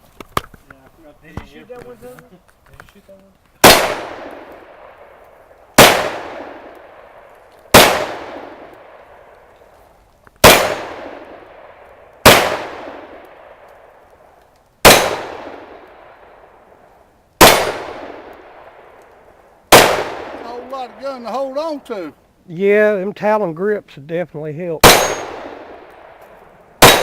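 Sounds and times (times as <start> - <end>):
pistol shots with echo: 3.6 - 5.1, 5.7 - 9.2, 10.4 - 13.7, 14.8 - 16.4, 17.4 - 19.0, 19.7 - 21.0, 24.8 - 26.2, 26.8 - 27.0.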